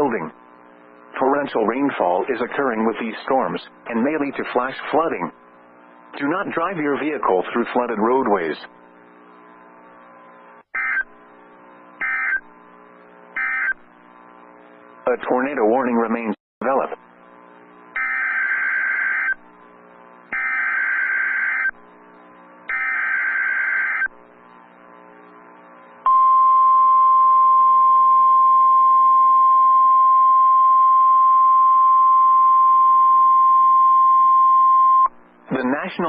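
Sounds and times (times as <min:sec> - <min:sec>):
steady alarm tone: 0:10.8 - 0:11.2, 0:12.0 - 0:12.5, 0:13.4 - 0:13.8, 0:18.0 - 0:19.4, 0:20.3 - 0:21.8, 0:22.7 - 0:24.1.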